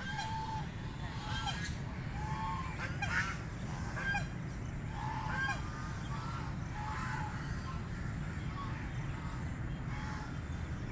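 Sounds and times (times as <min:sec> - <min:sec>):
steady low rumble: 0:00.0 - 0:01.3
ducks calling: 0:00.0 - 0:01.6.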